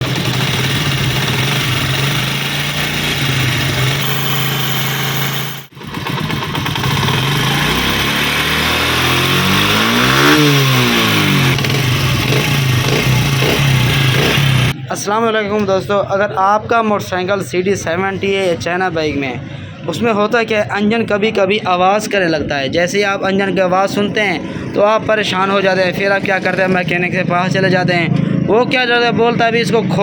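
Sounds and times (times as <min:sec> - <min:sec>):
motorcycle engine idling and revving: 0:00.0 - 0:14.8, 0:24.2 - 0:30.0.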